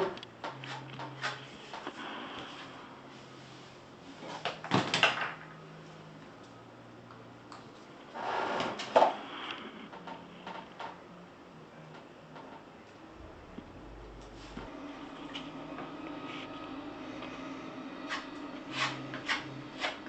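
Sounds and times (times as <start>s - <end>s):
faint low hum: 9.3s - 20.0s.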